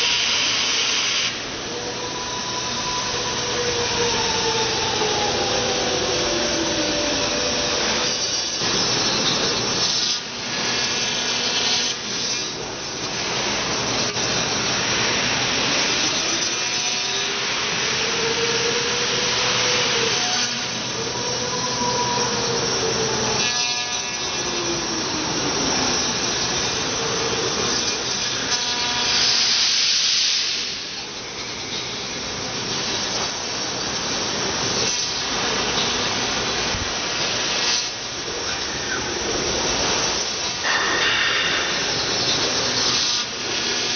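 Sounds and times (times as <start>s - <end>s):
machine whine changing pitch: 0.0s - 11.0s, 11.9s - 29.2s
machine whirring: 0.0s - 43.9s.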